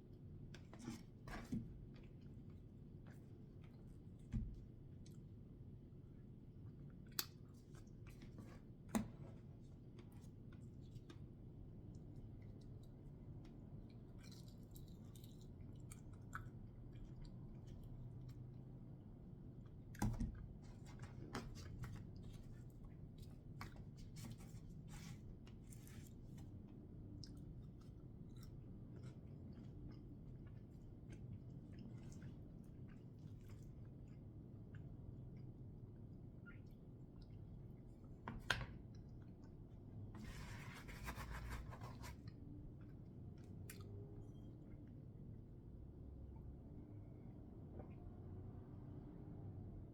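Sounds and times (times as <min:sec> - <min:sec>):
chewing with mouth clicks: 0:11.9 - 0:18.6, 0:25.5 - 0:38.2.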